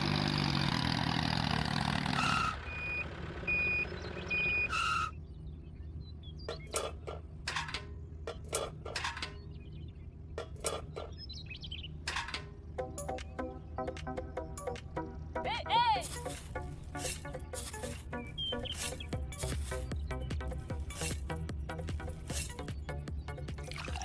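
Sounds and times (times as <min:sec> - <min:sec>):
reversing alarm beeping: 0:02.3 - 0:05.2.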